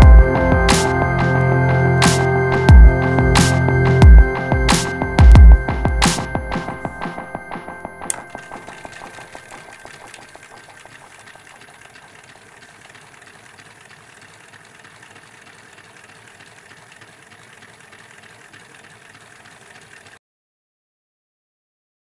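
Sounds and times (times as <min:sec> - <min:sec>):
solenoid engine clattering: 0:08.1 - 0:20.2.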